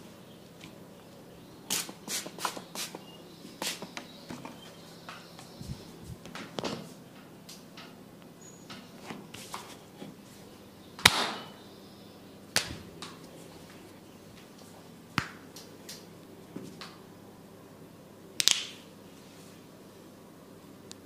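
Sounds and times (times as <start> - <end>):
hands slapping skin: 15.2 - 16.0, 18.4 - 18.8.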